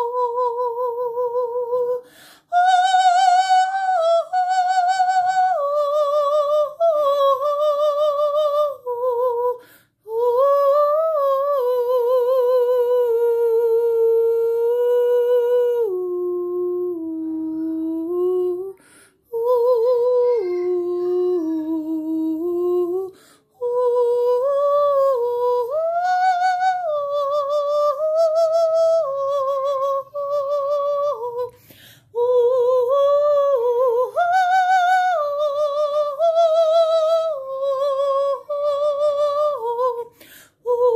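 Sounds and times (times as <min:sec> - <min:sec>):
person humming wordlessly: 0:02.6 - 0:31.5.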